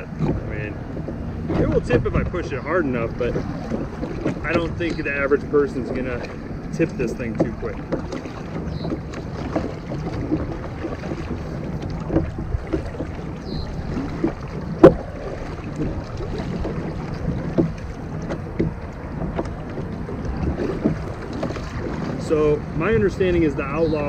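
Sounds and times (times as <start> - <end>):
water sloshing against kayak hull: 0.0 - 24.0
wind on microphone: 0.0 - 24.0
knocks on kayak: 7.3 - 22.2.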